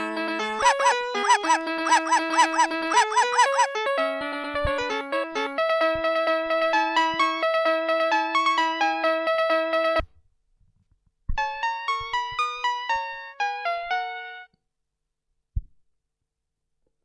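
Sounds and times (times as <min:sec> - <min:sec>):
electronic toy melodies: 0:00.0 - 0:06.3.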